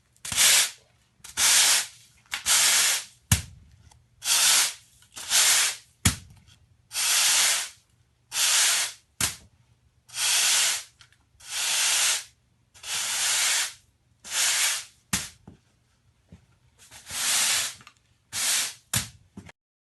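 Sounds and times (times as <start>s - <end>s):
broom sweeping concrete floor: 0.2s - 3.4s, 4.2s - 5.9s, 6.9s - 9.4s, 10.1s - 15.4s, 16.8s - 19.2s.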